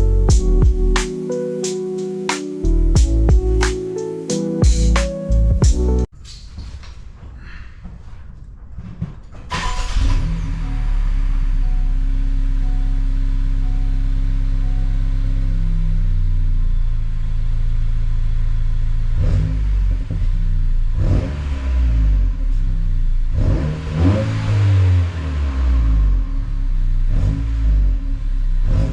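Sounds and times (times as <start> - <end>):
car engine idling and revving: 9.5 - 28.9.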